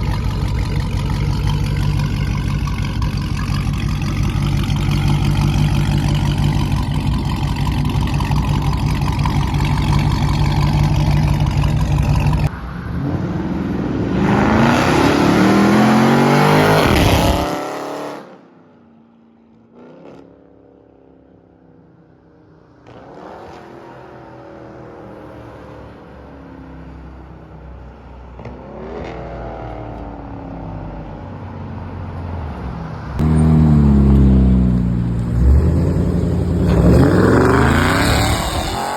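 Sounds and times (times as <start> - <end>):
car exhaust revving: 0.0 - 12.5, 33.2 - 38.9.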